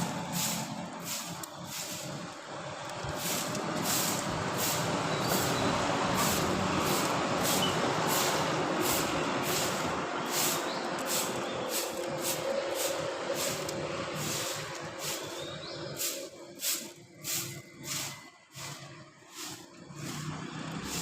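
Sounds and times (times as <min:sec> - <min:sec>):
bird harsh calls: 0:14.2 - 0:18.2.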